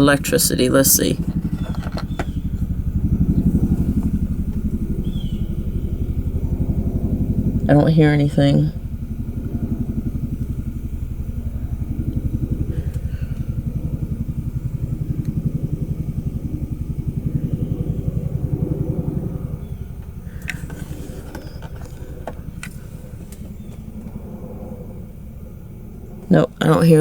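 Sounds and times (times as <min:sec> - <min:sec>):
engine idling: 0:00.0 - 0:27.0
sharp clicks: 0:01.0 - 0:06.1, 0:19.8 - 0:24.3.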